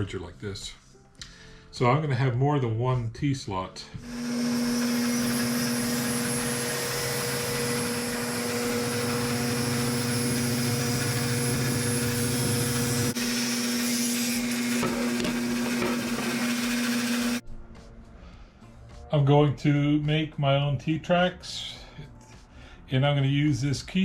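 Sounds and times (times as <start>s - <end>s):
power tool motor humming: 4.0s - 17.4s.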